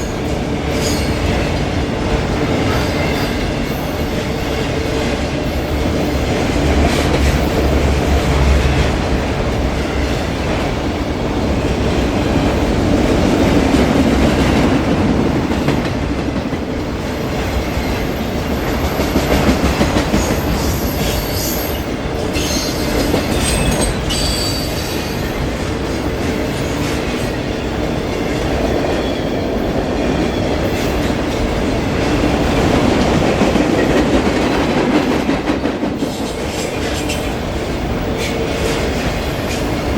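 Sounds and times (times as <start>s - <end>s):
train wheels rumbling on rail: 0.0s - 39.9s
high wheel squeals: 20.3s - 25.4s.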